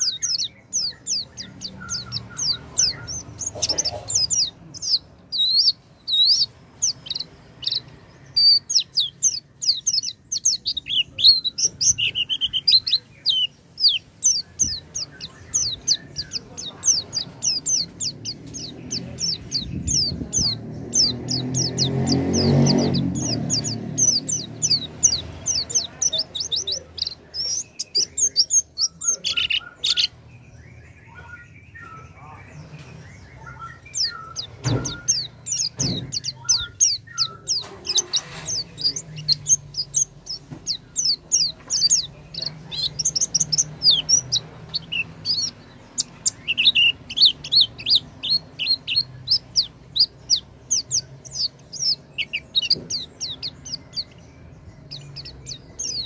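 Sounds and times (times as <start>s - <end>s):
bird twittering song: 0.0s - 56.0s
sharp knocks: 34.6s - 36.4s.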